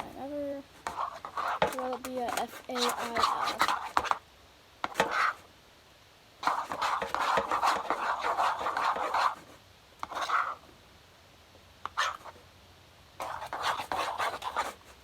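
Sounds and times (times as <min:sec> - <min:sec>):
spoon scraping in a bowl: 0:00.8 - 0:04.2, 0:06.4 - 0:09.4, 0:10.0 - 0:10.6.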